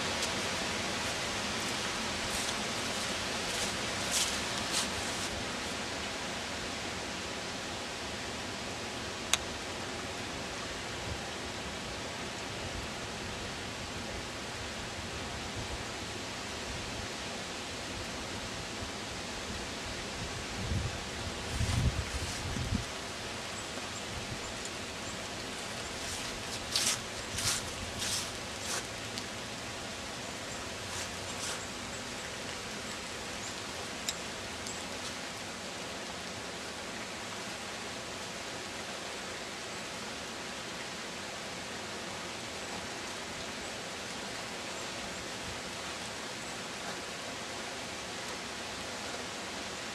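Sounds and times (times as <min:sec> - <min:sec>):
steady hiss: 0:00.0 - 0:49.9
wind rumble on microphone: 0:20.0 - 0:23.0.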